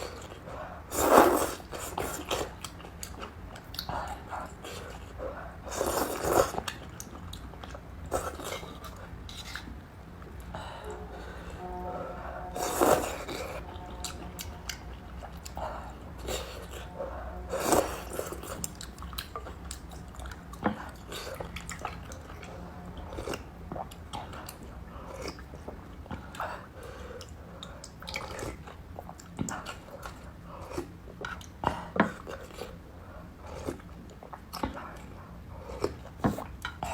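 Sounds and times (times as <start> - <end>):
slurping noodles: 0.0 - 2.6, 4.4 - 6.8, 12.5 - 19.2.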